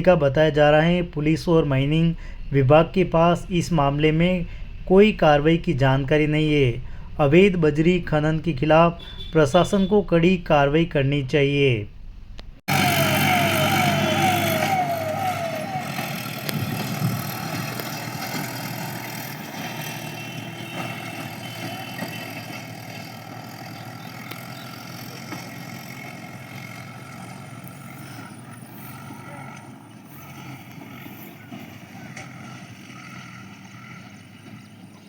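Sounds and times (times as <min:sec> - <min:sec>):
vehicle engines running: 0:00.0 - 0:11.3, 0:11.9 - 0:35.0
siren yelping: 0:12.7 - 0:18.1.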